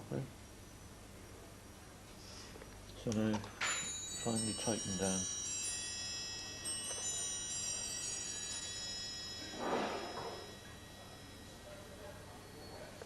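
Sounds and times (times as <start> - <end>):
metallic chime ringing: 3.6 - 13.0.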